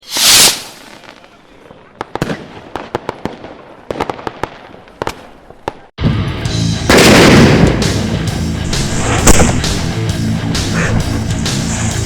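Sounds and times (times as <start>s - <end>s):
firecracker cracks: 0.0s - 1.4s, 8.7s - 9.9s
loud rock music: 6.0s - 12.0s.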